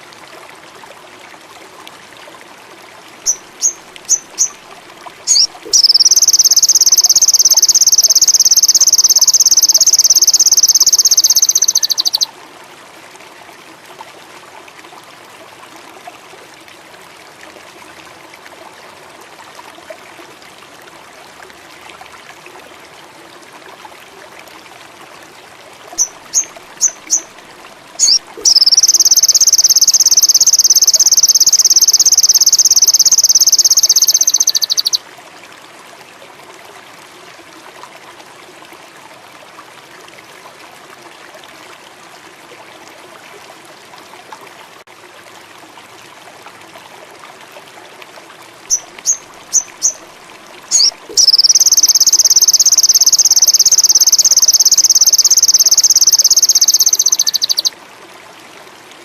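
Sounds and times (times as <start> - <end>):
trickling water: 0.0 - 59.0
bird chirps: 3.3 - 4.6, 5.3 - 12.3, 26.0 - 27.2, 28.0 - 35.0, 50.7 - 57.7
songbird trilling: 3.3 - 4.6, 5.3 - 12.3, 26.0 - 27.3, 28.0 - 35.0, 48.7 - 50.0, 50.7 - 57.7.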